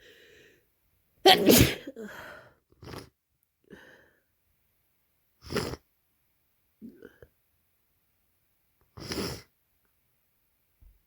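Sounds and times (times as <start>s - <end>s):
person sneezing: 1.3s - 2.1s
sniffles and breaths: 8.9s - 9.5s.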